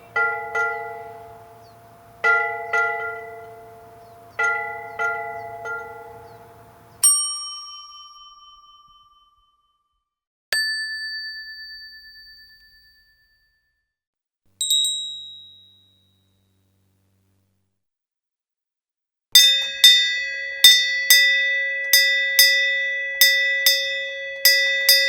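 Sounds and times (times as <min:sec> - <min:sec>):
small bells ringing: 0:00.0 - 0:09.4, 0:19.4 - 0:25.0.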